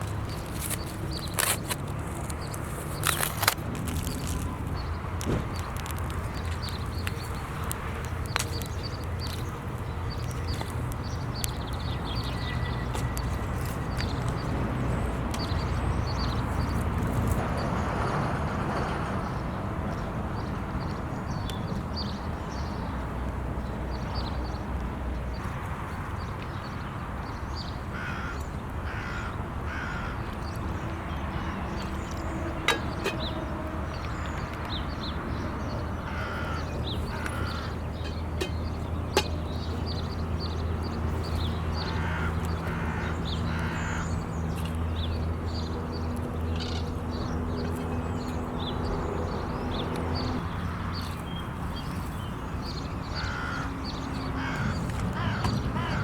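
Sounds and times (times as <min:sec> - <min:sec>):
crows cawing: 0:27.9 - 0:30.3, 0:36.0 - 0:38.6, 0:41.8 - 0:44.2, 0:53.1 - 0:56.0.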